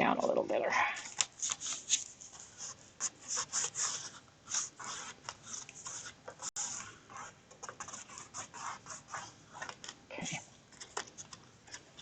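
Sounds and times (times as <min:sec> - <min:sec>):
cardstock rustling and scraping: 0:01.0 - 0:10.0.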